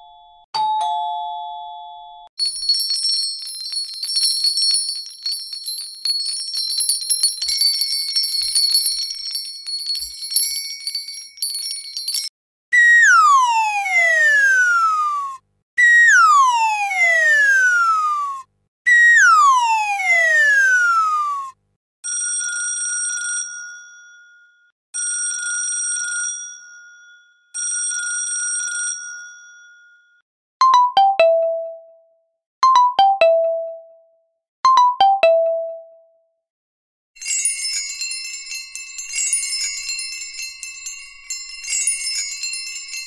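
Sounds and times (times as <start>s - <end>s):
electronic doorbell chime: 0.0s - 12.3s, 37.2s - 43.0s
bell ringing: 2.4s - 12.3s
many small bells jingling: 2.4s - 12.3s, 37.2s - 43.0s.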